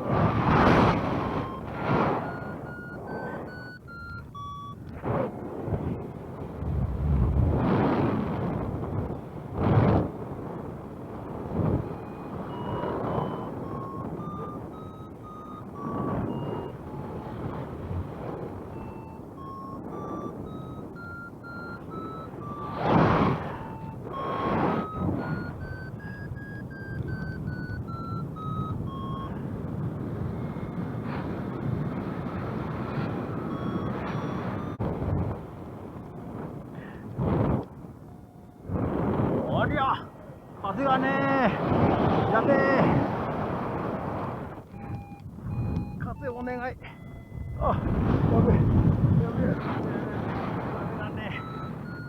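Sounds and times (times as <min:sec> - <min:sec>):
variometer beeping: 0:00.0 - 0:05.0, 0:10.9 - 0:35.4, 0:37.8 - 0:38.8, 0:44.5 - 0:52.0
wind rushing over microphone: 0:00.0 - 0:52.0.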